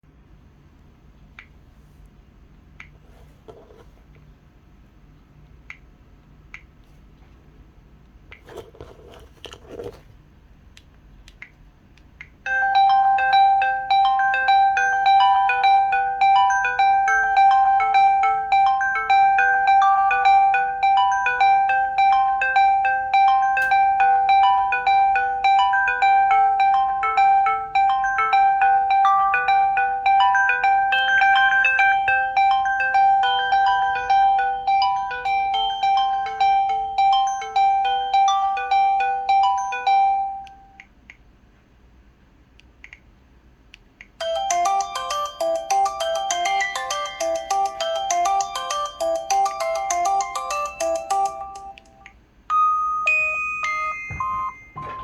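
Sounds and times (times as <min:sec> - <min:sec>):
jazz phone ringtone: 0:12.5 - 0:40.8, 0:44.2 - 0:51.8, 0:52.5 - 0:55.0.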